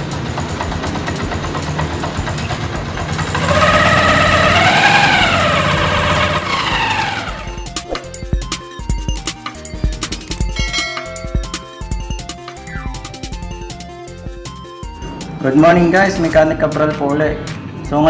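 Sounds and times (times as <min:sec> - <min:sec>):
music: 0:00.0 - 0:03.3, 0:07.0 - 0:18.0
motorcycle engine running: 0:00.0 - 0:15.2
engine whine: 0:00.0 - 0:15.8.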